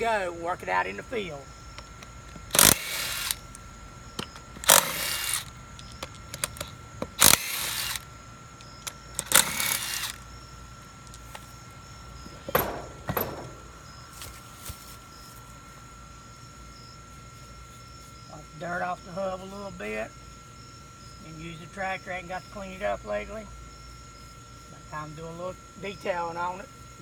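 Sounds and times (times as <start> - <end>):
impact driver hammering: 2.4 - 3.5, 4.2 - 5.5, 6.4 - 8.0, 8.8 - 10.2, 12.3 - 13.9
sharp metallic knocks: 12.4 - 14.0.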